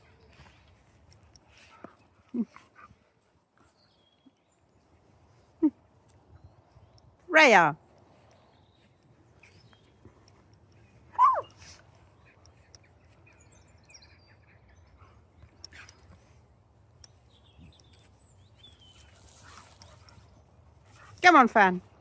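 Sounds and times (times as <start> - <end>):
dog yelping: 11.1 - 11.8
dog whining: 11.2 - 11.7.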